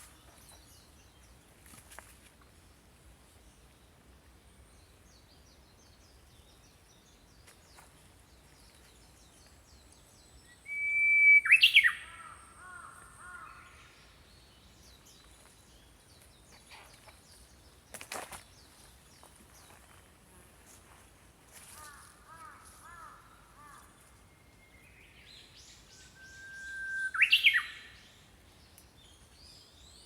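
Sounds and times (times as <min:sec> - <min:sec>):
small songbirds twittering: 0:00.0 - 0:30.0
bird singing whistled phrase: 0:10.6 - 0:12.1, 0:26.0 - 0:27.9.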